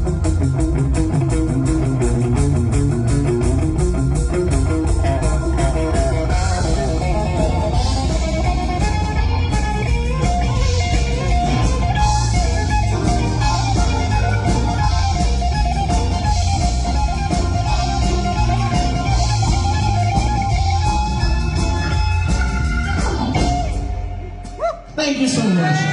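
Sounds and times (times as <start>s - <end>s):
bass guitar: 0.0s - 25.9s
drums: 0.0s - 25.9s
electric guitar: 0.0s - 25.9s.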